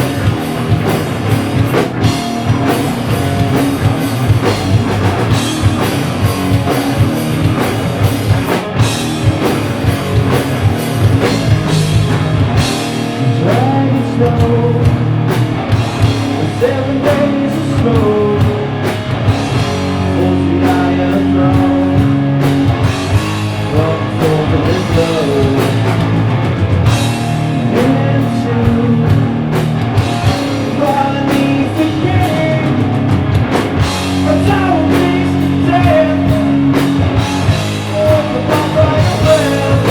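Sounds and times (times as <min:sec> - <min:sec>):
bass guitar: 0:00.0 - 0:39.9
drum kit: 0:00.0 - 0:39.9
electric guitar: 0:00.0 - 0:39.9
person singing: 0:13.2 - 0:15.1, 0:16.4 - 0:18.8, 0:20.1 - 0:22.2, 0:23.7 - 0:25.9, 0:27.5 - 0:29.4, 0:30.3 - 0:32.9, 0:34.2 - 0:36.8, 0:37.4 - 0:39.9.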